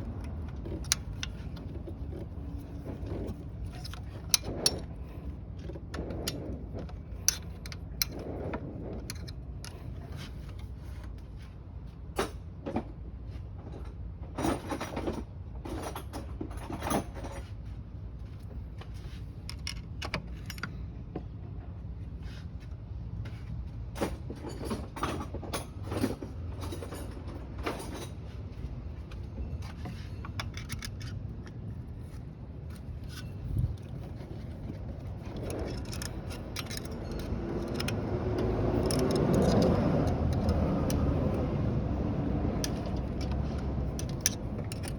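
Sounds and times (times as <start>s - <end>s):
metal tools clinking and scraping: 0.0s - 11.2s, 19.0s - 20.9s, 24.3s - 44.9s.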